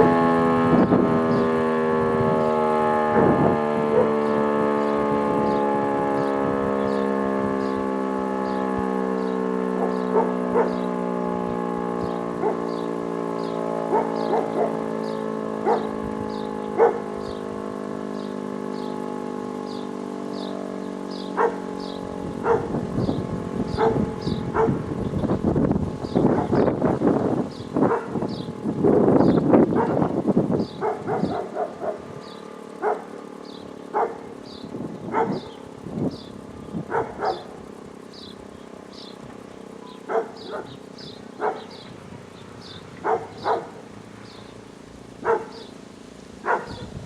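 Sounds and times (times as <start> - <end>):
electric siren winding down: 0.0 - 47.0
dog barking and yelping: 15.7 - 15.9, 16.8 - 17.0, 30.8 - 32.1, 32.8 - 33.0, 35.1 - 35.5, 36.9 - 37.5, 40.1 - 40.8, 41.4 - 41.7, 43.0 - 43.8, 45.2 - 45.7, 46.4 - 47.0.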